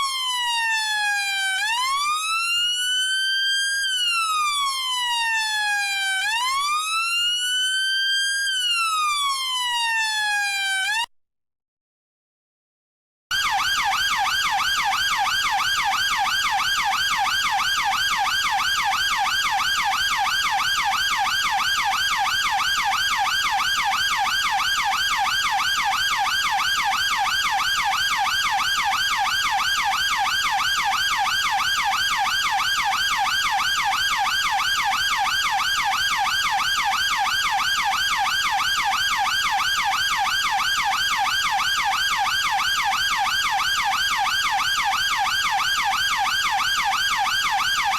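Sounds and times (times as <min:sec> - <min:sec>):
police siren yelping: 0:00.0 - 0:11.0, 0:13.3 - 0:47.9.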